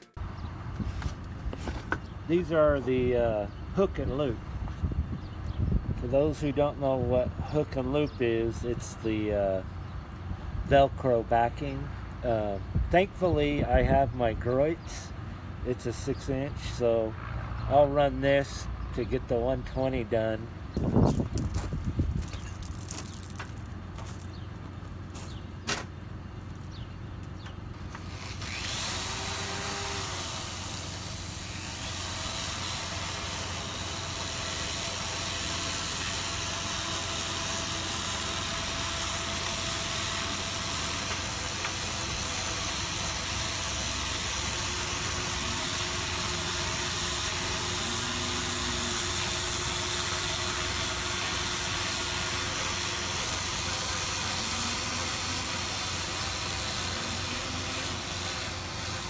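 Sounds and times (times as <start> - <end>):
orbital sander sanding metal: 27.9 - 59.0.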